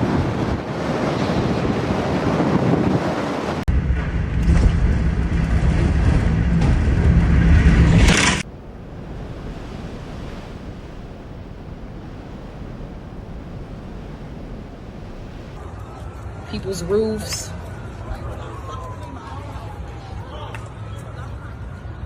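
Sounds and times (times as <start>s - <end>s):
storm wind on microphone: 0.0s - 15.6s.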